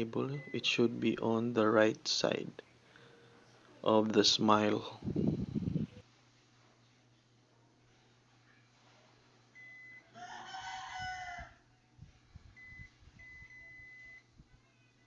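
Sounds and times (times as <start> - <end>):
multimeter continuity beep: 0.3 - 0.8, 12.6 - 14.3
rooster crowing: 10.0 - 11.7.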